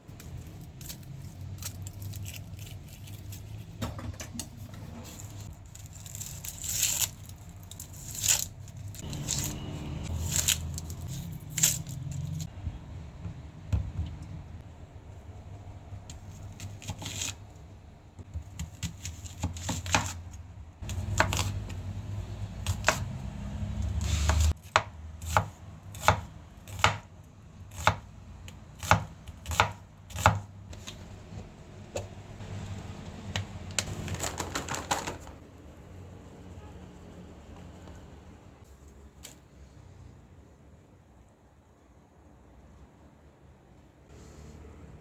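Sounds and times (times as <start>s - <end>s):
knife chopping on cutting board: 20.9s - 21.8s, 24.0s - 27.1s, 27.7s - 28.1s, 28.8s - 32.2s.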